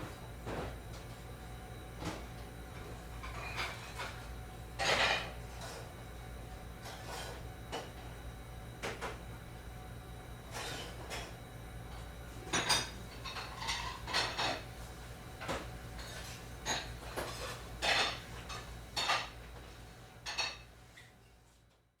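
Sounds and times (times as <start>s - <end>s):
dishes and pots clattering: 4.8s - 5.8s, 12.5s - 14.6s, 15.4s - 19.4s, 20.2s - 20.7s.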